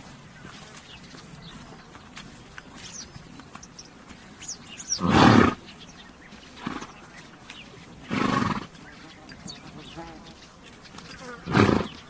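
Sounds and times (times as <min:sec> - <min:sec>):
small birds chirping: 0:00.0 - 0:12.0
horse snorting: 0:04.9 - 0:05.7, 0:06.6 - 0:07.2, 0:07.9 - 0:08.9, 0:11.1 - 0:12.0.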